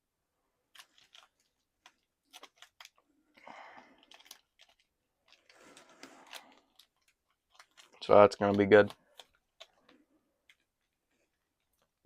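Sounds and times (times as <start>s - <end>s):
plastic scraping: 4.0s - 11.8s.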